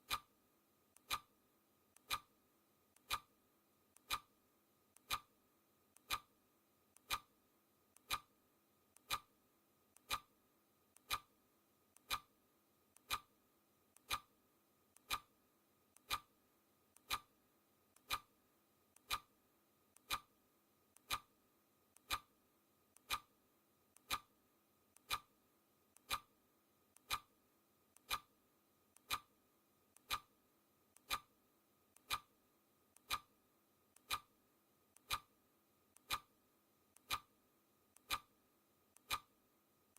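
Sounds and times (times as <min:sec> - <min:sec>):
clock ticking: 0:00.0 - 0:00.3, 0:01.0 - 0:01.3, 0:02.0 - 0:02.3, 0:02.9 - 0:03.3, 0:03.9 - 0:04.3, 0:04.9 - 0:05.3, 0:05.9 - 0:06.3, 0:06.9 - 0:07.3, 0:07.9 - 0:08.3, 0:08.9 - 0:09.3, 0:10.0 - 0:10.3, 0:10.9 - 0:11.3, 0:11.9 - 0:12.3, 0:12.9 - 0:13.3, 0:13.9 - 0:14.3, 0:14.9 - 0:15.3, 0:15.9 - 0:16.3, 0:16.9 - 0:17.3, 0:18.0 - 0:18.3, 0:18.9 - 0:19.3, 0:20.0 - 0:20.3, 0:20.9 - 0:21.3, 0:21.9 - 0:22.3, 0:22.9 - 0:23.3, 0:23.9 - 0:24.3, 0:25.0 - 0:25.3, 0:26.0 - 0:26.3, 0:27.0 - 0:27.3, 0:28.0 - 0:28.3, 0:29.0 - 0:29.3, 0:30.0 - 0:30.3, 0:31.0 - 0:31.3, 0:32.0 - 0:32.3, 0:33.0 - 0:33.3, 0:34.0 - 0:34.3, 0:35.0 - 0:35.4, 0:36.0 - 0:36.3, 0:37.0 - 0:37.3, 0:38.0 - 0:38.4, 0:39.0 - 0:39.3.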